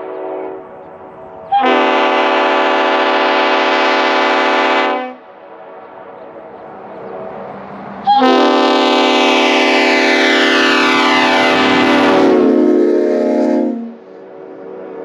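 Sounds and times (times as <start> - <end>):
loud air horn chord: 0.0 - 0.8, 1.5 - 5.2, 8.1 - 14.6.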